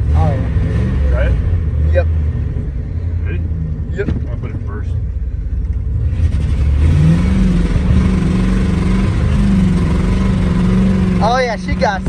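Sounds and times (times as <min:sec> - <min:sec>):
truck engine revving hard: 0:00.0 - 0:02.8, 0:05.9 - 0:12.0.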